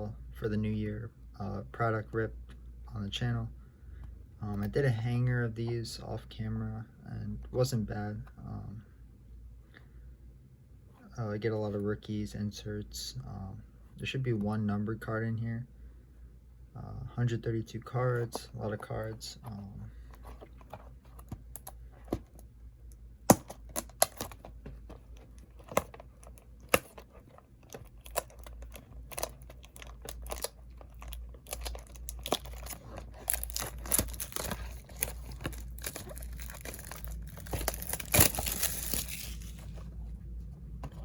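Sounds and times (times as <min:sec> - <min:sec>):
plastic wrap crinkling and tearing: 0:25.2 - 0:39.7.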